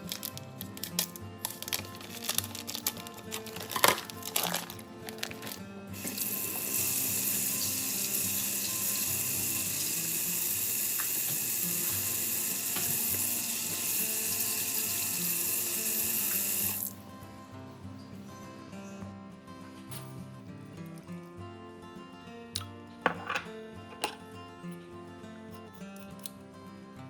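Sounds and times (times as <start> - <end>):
crinkling and clicking handling: 0.0 - 5.7
tap running into sink: 6.0 - 8.9, 10.9 - 14.1.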